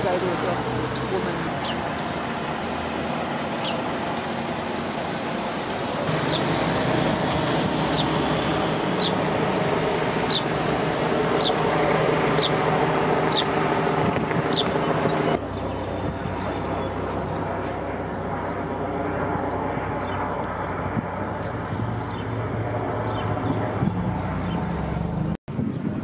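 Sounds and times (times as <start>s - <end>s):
engine hum: 0.0s - 25.4s
bird chirping: 1.6s - 2.2s, 3.5s - 3.8s, 6.2s - 6.6s, 7.4s - 9.3s, 10.2s - 12.6s, 13.2s - 13.6s, 14.4s - 17.0s.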